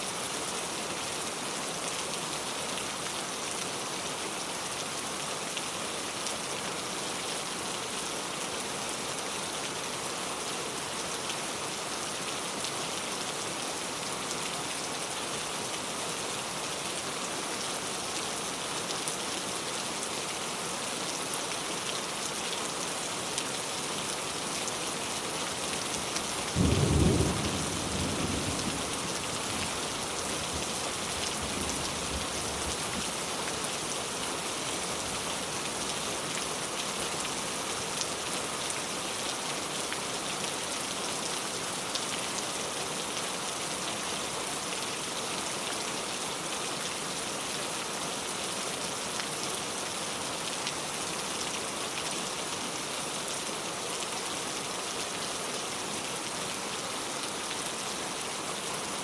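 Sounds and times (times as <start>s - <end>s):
steady rain falling: 0.0s - 59.0s.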